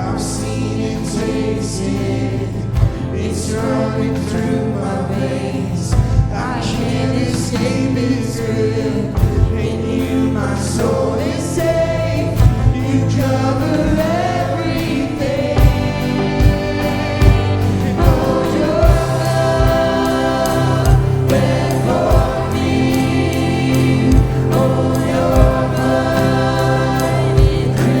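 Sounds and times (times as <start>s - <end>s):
congregation singing worship song: 0.0s - 28.0s
band playing: 5.6s - 28.0s
low drum hits: 15.6s - 28.0s.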